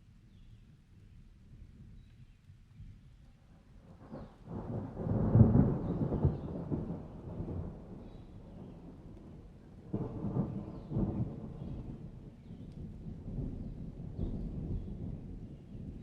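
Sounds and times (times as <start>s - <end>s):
rain: 0.0s - 16.0s
thunder rumbling: 4.0s - 16.0s.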